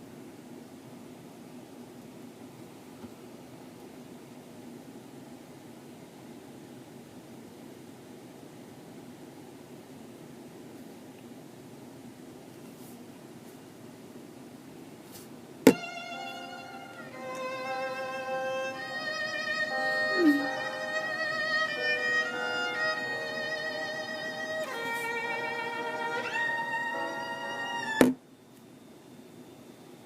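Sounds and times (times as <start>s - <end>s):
violin melody through phone speaker: 15.7s - 28.2s.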